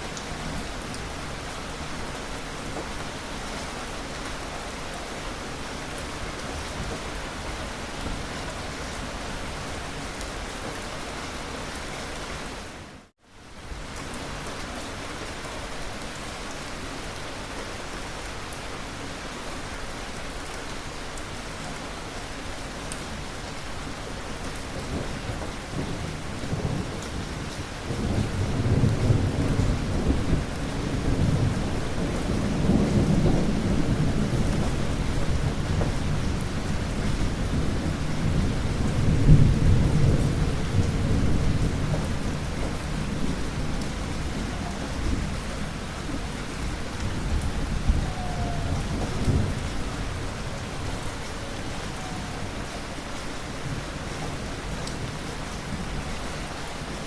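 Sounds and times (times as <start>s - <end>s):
steady rain: 0.0s - 57.0s
low rumble of thunder: 24.4s - 57.0s.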